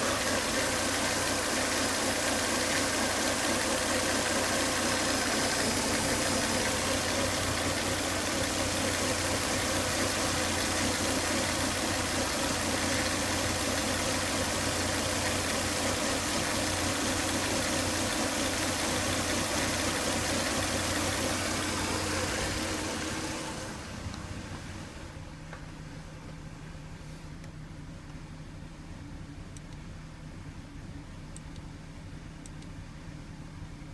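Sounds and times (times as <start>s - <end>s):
engine whine: 0.0s - 25.7s
car engine idling: 0.0s - 26.9s.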